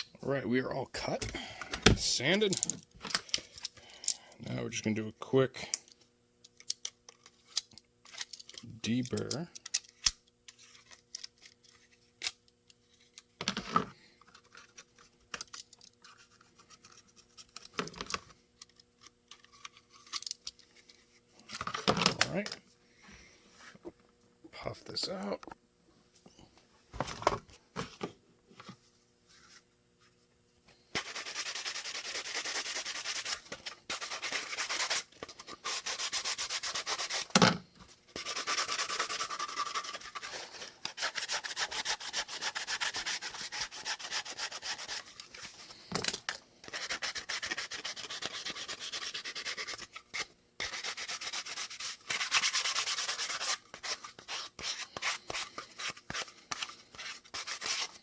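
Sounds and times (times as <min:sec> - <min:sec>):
rasping sanding of plastic: 0:31.0 - 0:37.3, 0:38.1 - 0:45.5, 0:46.6 - 0:58.0.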